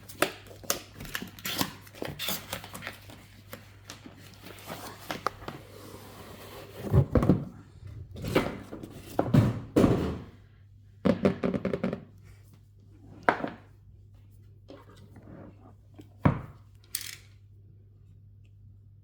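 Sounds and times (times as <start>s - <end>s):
box and packaging being handled: 0.0s - 7.6s.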